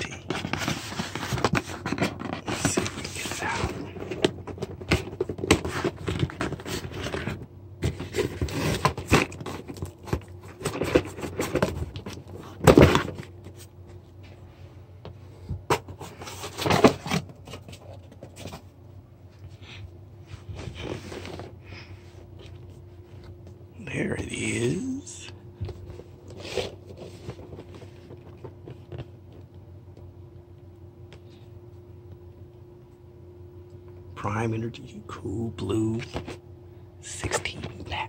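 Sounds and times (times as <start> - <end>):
cardboard scraping and rustling: 0.0 - 14.4, 15.7 - 18.7, 20.3 - 21.6, 25.7 - 29.2.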